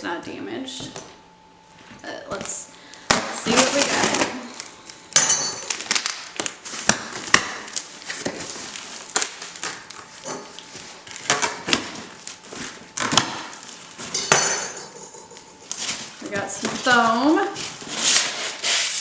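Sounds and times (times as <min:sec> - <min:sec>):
cardboard scraping and rustling: 0:15.7 - 0:19.0.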